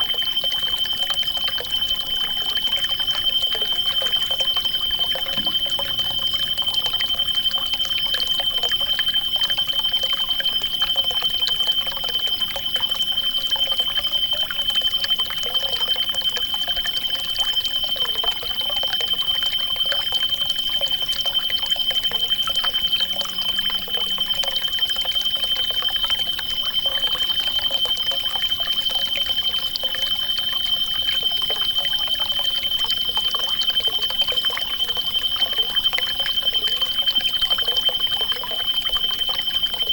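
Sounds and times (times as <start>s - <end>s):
continuous high-pitched tone: 0.0s - 39.9s
trickling water: 0.0s - 39.9s
faint warbling: 3.8s - 7.7s.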